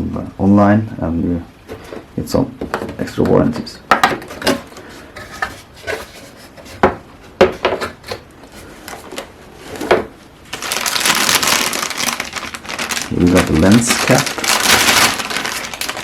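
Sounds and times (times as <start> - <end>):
packaging rustling: 7.8 - 16.0.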